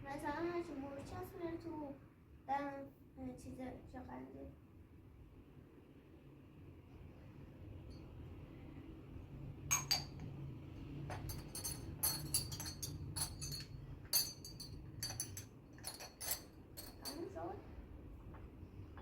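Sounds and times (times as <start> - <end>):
low steady hum: 0.0 - 19.0
glass or ceramic clinks: 9.7 - 10.3, 11.1 - 17.2.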